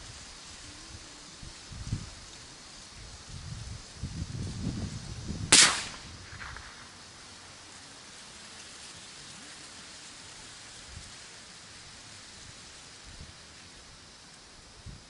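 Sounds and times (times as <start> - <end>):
steady outdoor hiss: 0.0 - 15.0
rifle shot: 5.5 - 6.9.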